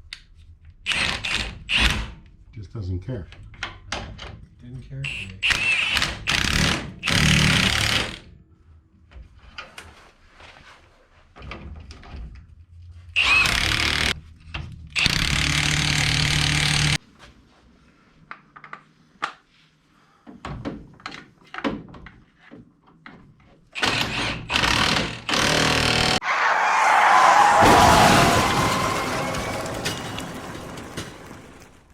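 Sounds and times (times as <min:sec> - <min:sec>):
power tool running: 0:23.8 - 0:26.2.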